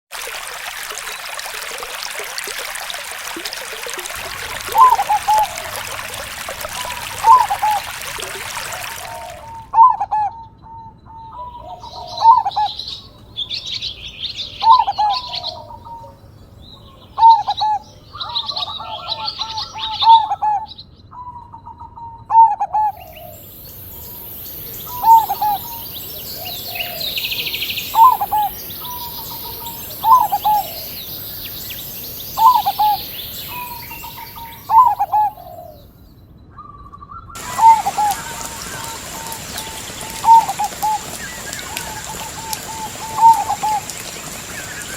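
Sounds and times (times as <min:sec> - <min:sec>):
high steady hiss: 0:00.2 - 0:09.2, 0:23.2 - 0:35.1, 0:37.4 - 0:44.9
small birds chirping: 0:01.0 - 0:09.8, 0:11.2 - 0:21.2, 0:22.9 - 0:36.2, 0:37.3 - 0:44.9
dove cooing: 0:03.9 - 0:10.3, 0:22.3 - 0:31.0, 0:31.8 - 0:35.8, 0:37.4 - 0:44.9.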